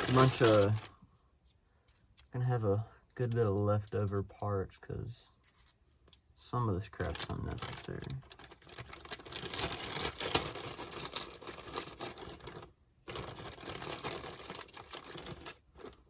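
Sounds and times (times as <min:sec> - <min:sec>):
metal hardware clinking: 0:00.0 - 0:00.9, 0:03.2 - 0:04.4.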